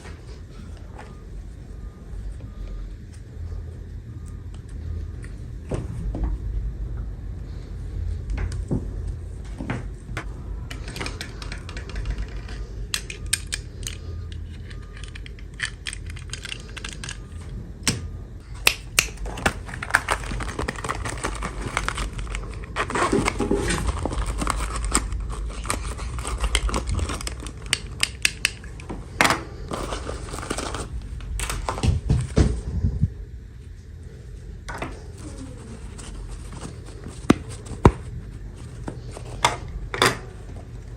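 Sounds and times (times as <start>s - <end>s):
steady low hum: 0.0s - 40.9s
hands unboxing toys: 10.7s - 17.3s, 18.6s - 28.9s
packaging rustling: 19.1s - 28.8s, 29.6s - 32.6s, 35.2s - 39.4s.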